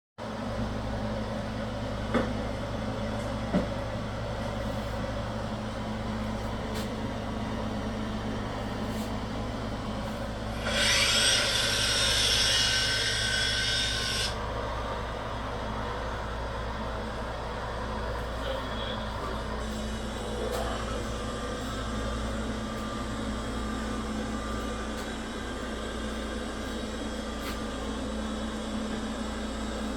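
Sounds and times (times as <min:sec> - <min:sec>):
steady low hum: 0:00.3 - 0:29.9
hissing tool with thin whine: 0:10.5 - 0:14.4
tool working on wood: 0:10.5 - 0:14.4.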